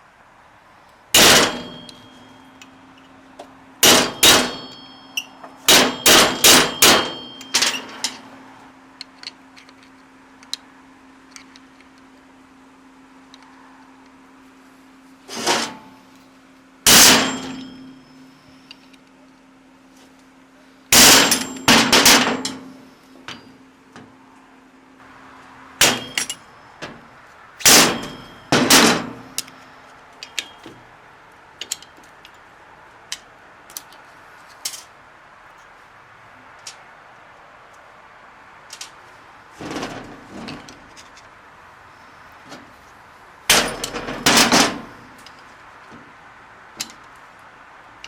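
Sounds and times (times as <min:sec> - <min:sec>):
hammer striking metal: 0:01.2 - 0:02.6, 0:03.8 - 0:08.2, 0:16.9 - 0:18.2, 0:21.0 - 0:23.6, 0:25.8 - 0:26.5, 0:27.6 - 0:29.6.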